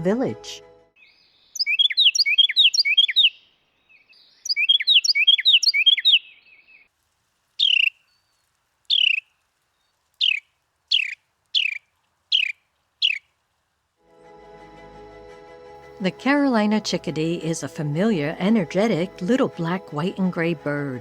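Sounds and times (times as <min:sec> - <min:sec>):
sharp falling bird notes: 0:07.6 - 0:13.3
wren rolling chant: 0:16.0 - 0:21.0.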